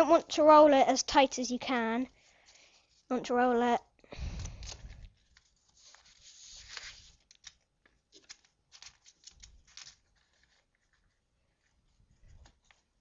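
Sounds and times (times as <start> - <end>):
paper rustling and crinkling: 4.2 - 13.0.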